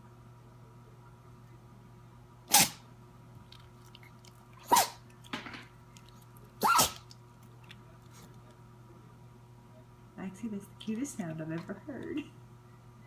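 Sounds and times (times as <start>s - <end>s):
high sneezes: 2.5s - 2.8s, 4.6s - 5.0s, 6.6s - 7.0s.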